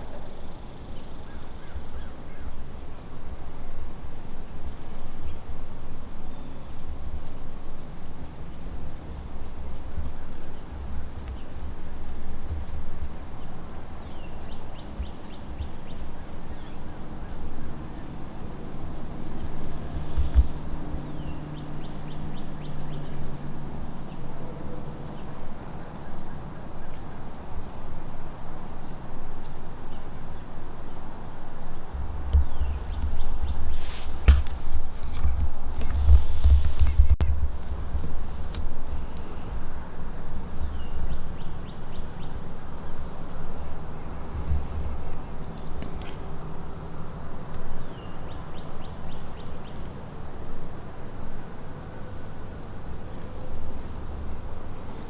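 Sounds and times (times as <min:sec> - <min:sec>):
low distant hum: 0:00.0 - 0:55.0
wind buffeting microphone: 0:07.8 - 0:24.0, 0:31.5 - 0:42.3.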